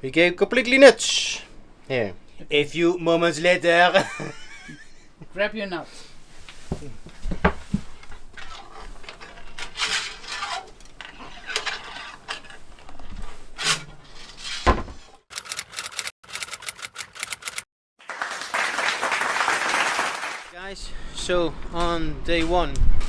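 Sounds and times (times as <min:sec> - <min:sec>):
tool and small parts rattling: 0:06.2 - 0:17.6
clapping: 0:18.0 - 0:20.5.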